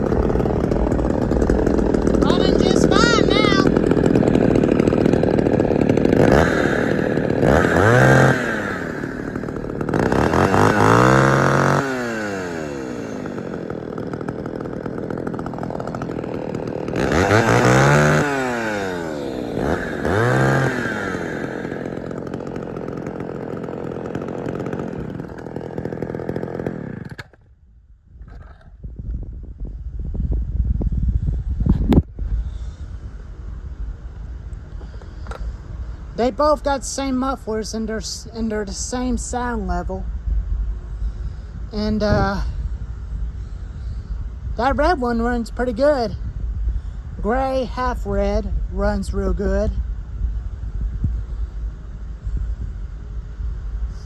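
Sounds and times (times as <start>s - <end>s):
chainsaw idling: 0.0s - 27.6s, 32.8s - 54.0s
chainsaw throttle blips: 0.0s - 27.6s.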